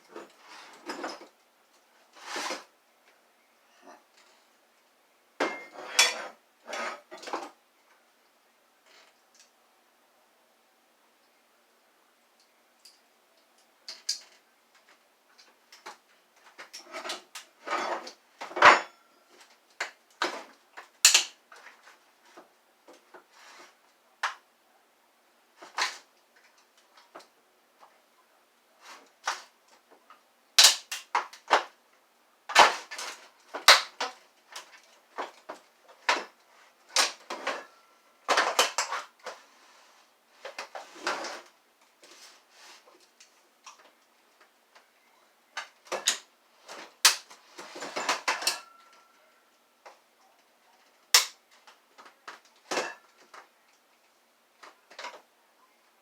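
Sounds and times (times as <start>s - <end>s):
plastic scraping: 2.1s - 2.7s.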